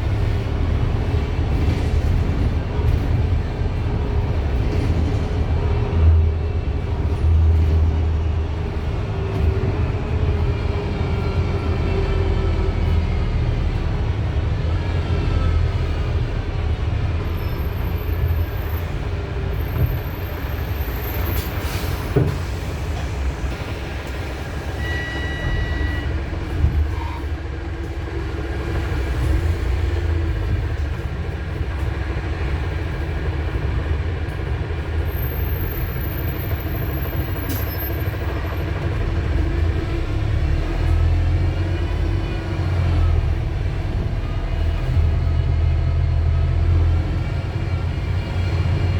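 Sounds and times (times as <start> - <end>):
bus drivetrain rumble and whine: 0.0 - 48.9
short beep: 24.8 - 26.2.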